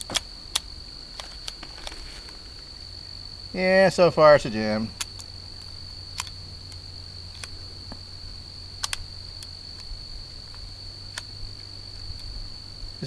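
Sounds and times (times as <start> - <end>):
pistol clicks: 0.0 - 2.0, 5.0 - 8.0, 8.8 - 9.9
high-pitched insect trilling: 0.0 - 13.0.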